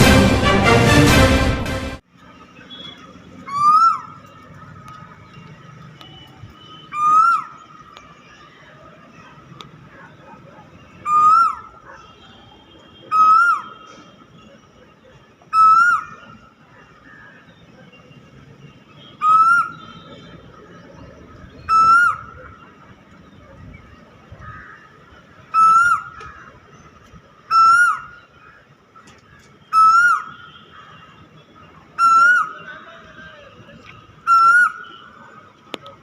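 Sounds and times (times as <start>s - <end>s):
cuckoo calling: 2.6s - 17.2s, 19.0s - 24.1s, 25.4s - 36.0s.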